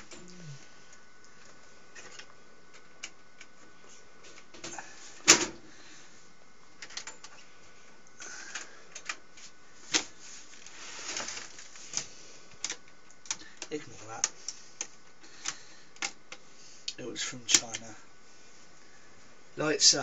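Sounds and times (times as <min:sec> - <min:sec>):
clicks and knocks of computer hardware: 0:06.8 - 0:07.4, 0:17.4 - 0:17.9.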